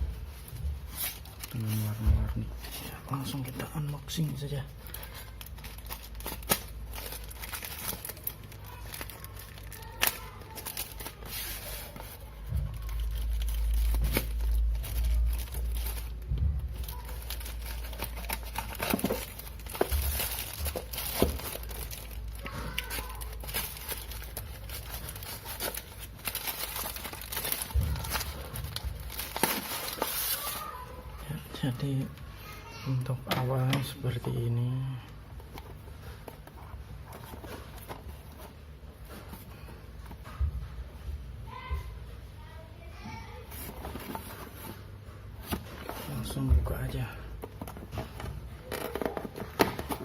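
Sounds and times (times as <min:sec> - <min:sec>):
packaging crinkling and tearing: 0:00.3 - 0:32.2, 0:43.5 - 0:50.0.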